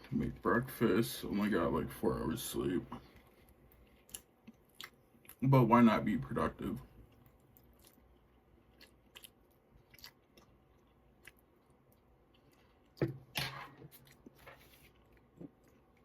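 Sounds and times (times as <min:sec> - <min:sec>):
quiet chewing: 0:02.9 - 0:05.4, 0:07.0 - 0:13.0, 0:13.9 - 0:16.0.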